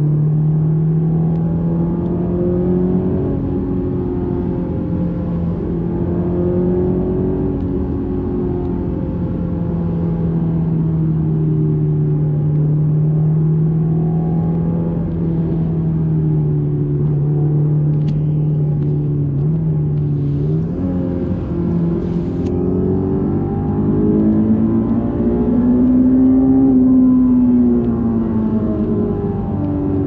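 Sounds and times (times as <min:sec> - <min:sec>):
car engine running: 0:00.0 - 0:30.0.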